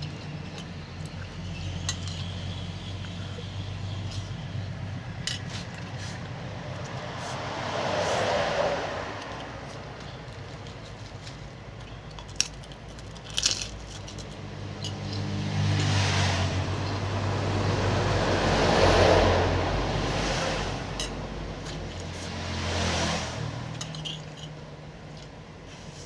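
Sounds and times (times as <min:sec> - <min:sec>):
vehicle passing: 0:00.0 - 0:10.9, 0:14.1 - 0:24.8.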